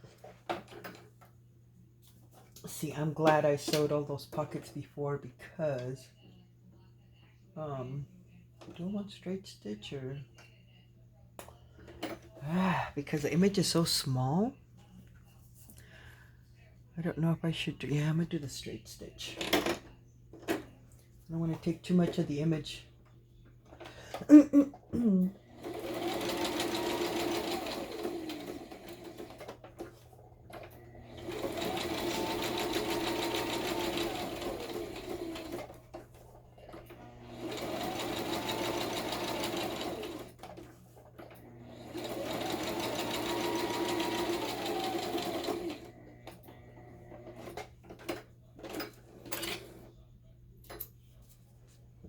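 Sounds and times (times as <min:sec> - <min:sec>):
sewing machine stitching: 0:25.5 - 0:36.0, 0:36.6 - 0:49.9.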